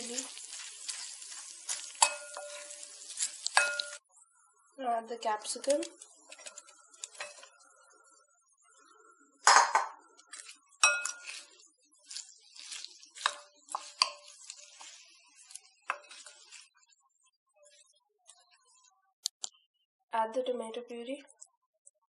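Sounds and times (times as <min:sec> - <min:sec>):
spoon clinking against a bowl: 0:02.0 - 0:04.0, 0:09.5 - 0:11.5, 0:13.2 - 0:14.4.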